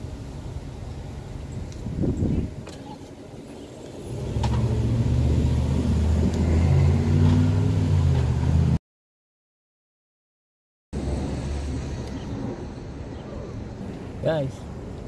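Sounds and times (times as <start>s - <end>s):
car engine humming: 0.0s - 8.8s.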